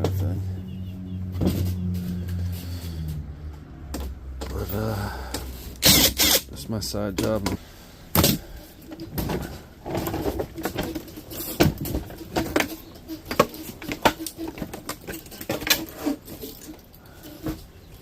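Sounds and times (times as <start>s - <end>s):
scrap metal clicks and rattles: 8.2s - 17.7s.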